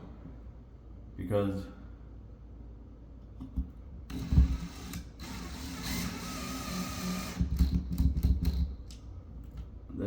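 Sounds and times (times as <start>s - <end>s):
drill motor driving screw: 4.1s - 8.6s.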